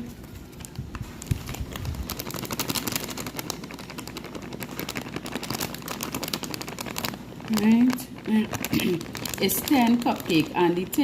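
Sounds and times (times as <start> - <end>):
plastic packet crinkling: 0.0 - 11.0.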